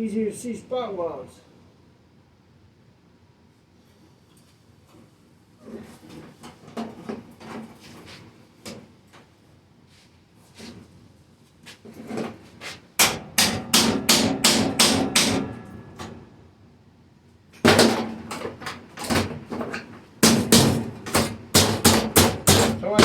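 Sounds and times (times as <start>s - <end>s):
hammer blows on sheet metal: 13.0s - 16.3s, 20.2s - 23.0s.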